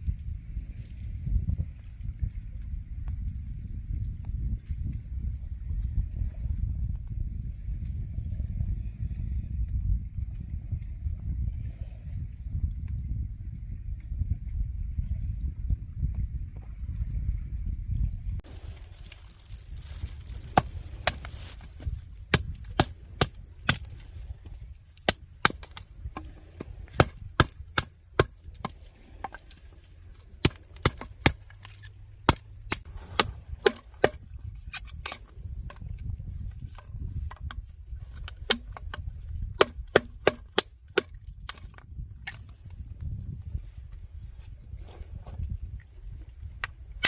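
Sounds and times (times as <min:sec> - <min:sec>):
wood being chopped: 0:18.5 - 0:24.0, 0:25.0 - 0:29.5, 0:30.4 - 0:35.8, 0:38.2 - 0:42.4.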